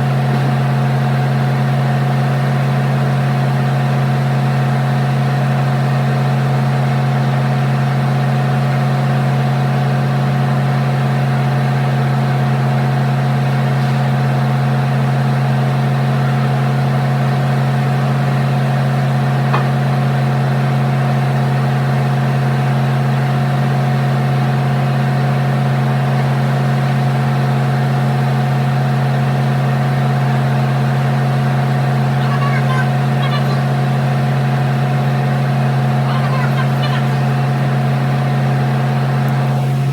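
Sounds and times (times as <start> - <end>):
engine idling: 0.0 - 39.9.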